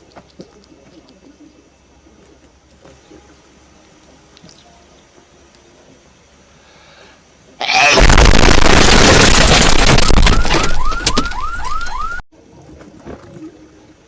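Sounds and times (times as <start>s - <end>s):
distorted explosion-like blast: 7.8s - 10.9s.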